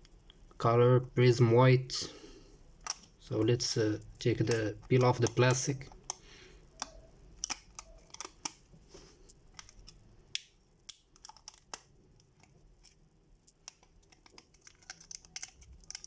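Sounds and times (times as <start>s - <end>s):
plastic wrap crinkling: 2.8s - 16.0s.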